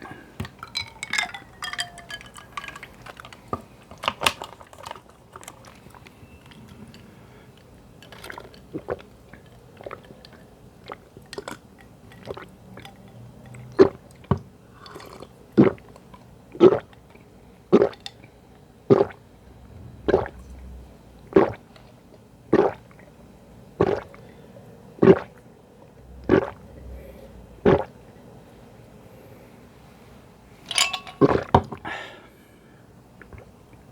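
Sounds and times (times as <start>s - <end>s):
person gulping juice: 8.2s - 11.5s, 12.2s - 12.9s, 13.7s - 14.0s, 14.8s - 16.0s, 16.6s - 17.2s, 17.8s - 18.1s, 18.9s - 21.7s, 22.5s - 23.1s, 23.8s - 24.3s, 25.0s - 25.4s, 26.0s - 28.0s, 31.2s - 31.9s, 33.2s - 33.9s.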